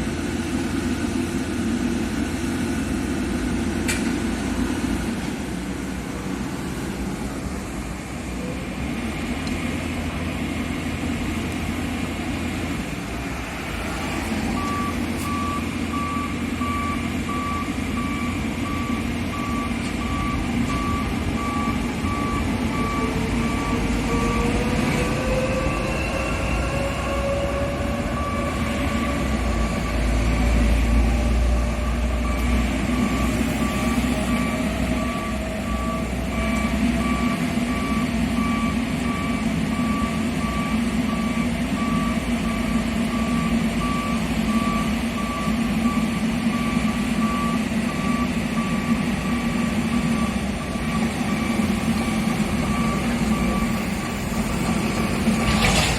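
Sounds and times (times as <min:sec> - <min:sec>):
diesel engine running: 0:00.0 - 0:55.9
reversing alarm beeping: 0:13.7 - 0:55.9.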